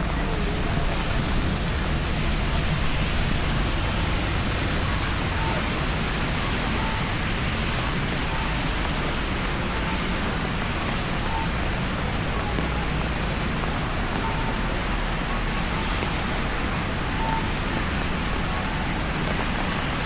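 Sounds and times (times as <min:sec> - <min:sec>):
heavy rain hissing: 0:00.0 - 0:20.0
faint high beeps: 0:06.6 - 0:07.3, 0:17.0 - 0:17.8.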